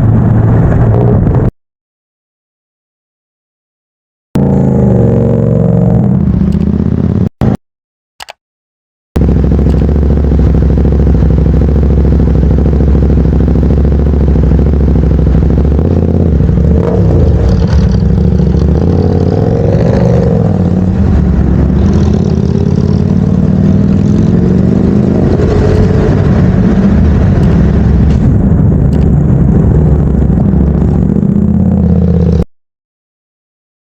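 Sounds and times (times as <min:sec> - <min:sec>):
diesel engines in traffic: 0:04.4 - 0:07.6, 0:09.2 - 0:32.5
engine revving: 0:04.4 - 0:07.6, 0:09.2 - 0:32.5.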